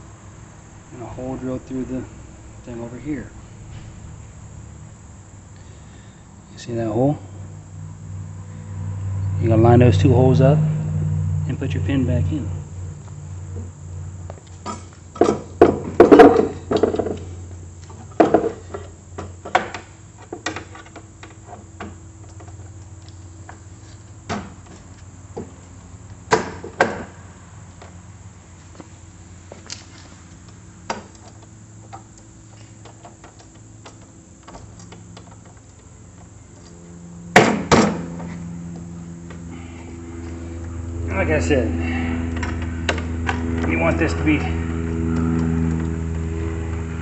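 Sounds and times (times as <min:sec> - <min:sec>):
low hum: 0:00.0 - 0:47.0.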